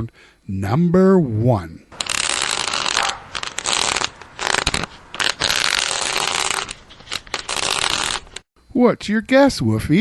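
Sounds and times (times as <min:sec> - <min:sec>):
metal nozzle scraping on concrete: 0:01.9 - 0:08.4.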